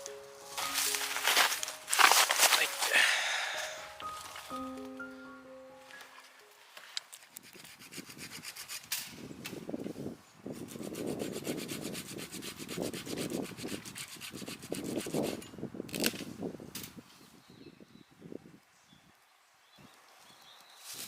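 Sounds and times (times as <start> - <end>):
hand saw cutting wood: 7.2 - 9.2, 10.6 - 16.1.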